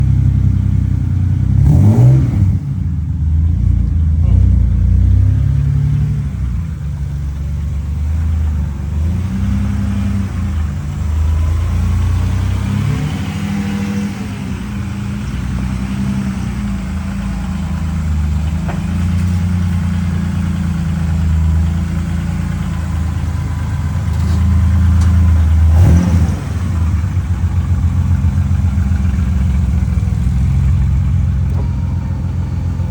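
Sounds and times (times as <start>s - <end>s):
rally car engine revving: 1.3s - 2.9s, 8.1s - 32.9s.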